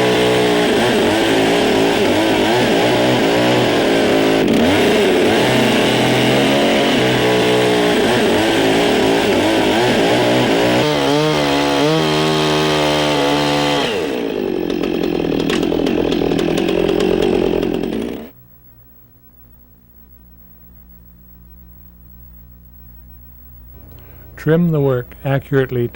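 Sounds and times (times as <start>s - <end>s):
chainsaw cutting log: 0.0s - 18.4s.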